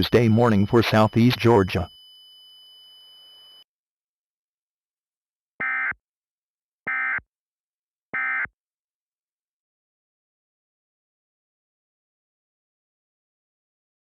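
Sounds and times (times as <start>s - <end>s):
digital data tone bursts: 0.0s - 2.0s.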